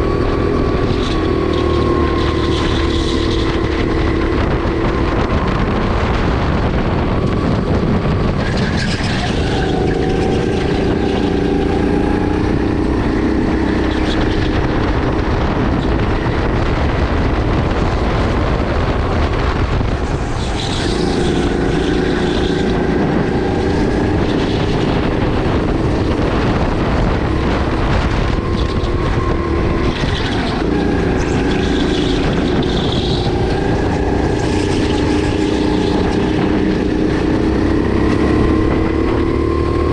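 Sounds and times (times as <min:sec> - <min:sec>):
kart engine running at speed: 0:00.0 - 0:39.9.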